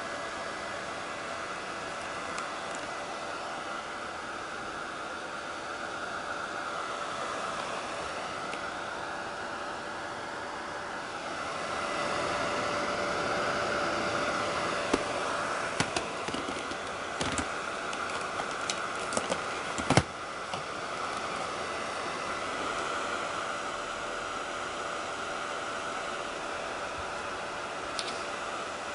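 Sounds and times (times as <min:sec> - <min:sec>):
vacuum cleaner whirring: 0:00.0 - 0:28.9
sharp clicks and knocks: 0:15.8 - 0:20.7.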